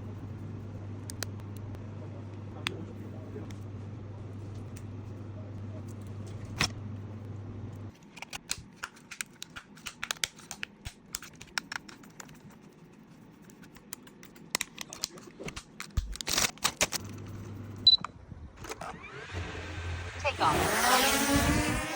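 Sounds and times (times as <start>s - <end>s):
low hum: 0.0s - 7.9s
small parts clicking and tapping: 7.9s - 17.1s.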